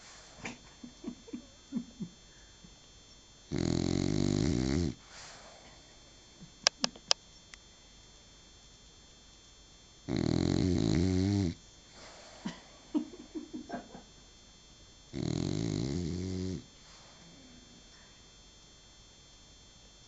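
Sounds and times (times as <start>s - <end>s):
dog snoring: 3.5s - 5.5s, 10.0s - 12.4s, 15.1s - 17.2s.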